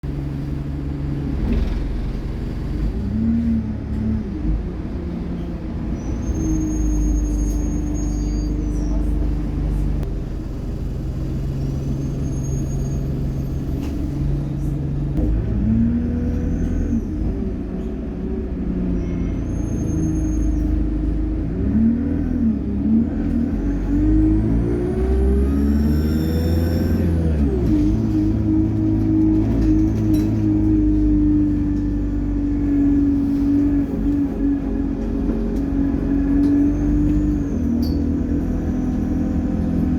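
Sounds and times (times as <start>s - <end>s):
bus diesel engine under load: 0.0s - 39.9s.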